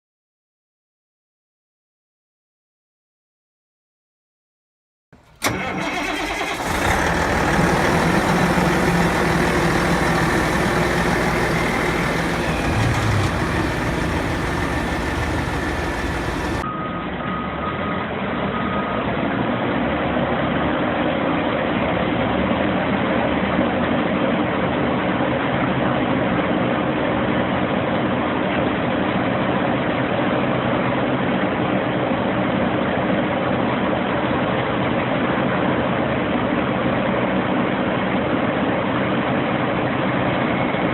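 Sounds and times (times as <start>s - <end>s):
diesel engine running: 5.2s - 16.6s.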